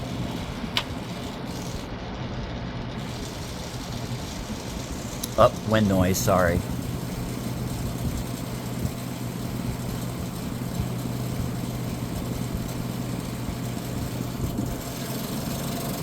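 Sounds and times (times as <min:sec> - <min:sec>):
compressor low hum: 0:00.0 - 0:16.0
fan air rushing: 0:00.0 - 0:16.0.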